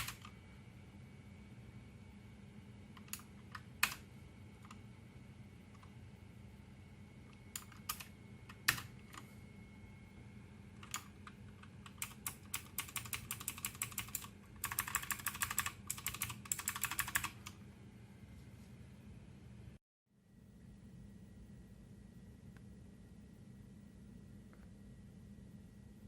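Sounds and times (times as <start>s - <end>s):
typing on mechanical keyboard: 0.0s - 0.3s, 3.0s - 4.0s, 7.4s - 9.2s, 10.8s - 17.5s.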